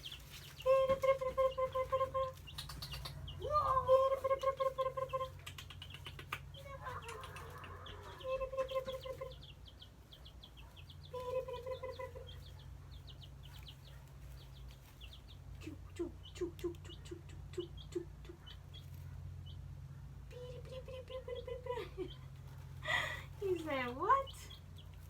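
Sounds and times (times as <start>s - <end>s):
chicks peeping: 0.0s - 25.0s.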